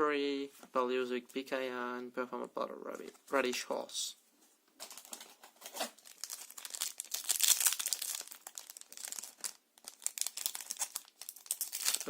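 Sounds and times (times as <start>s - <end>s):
foil wrapper crinkling and tearing: 4.8s - 12.0s.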